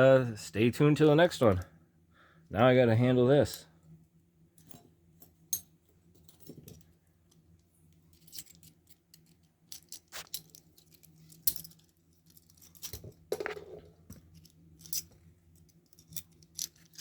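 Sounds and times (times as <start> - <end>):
small metal parts clicking: 8.1 - 13.2, 14.1 - 17.0.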